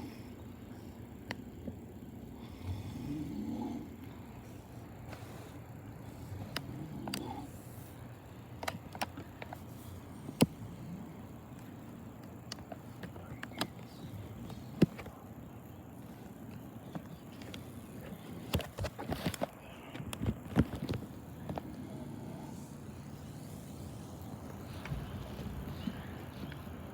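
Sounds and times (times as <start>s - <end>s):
man snoring loudly: 2.5s - 4.0s.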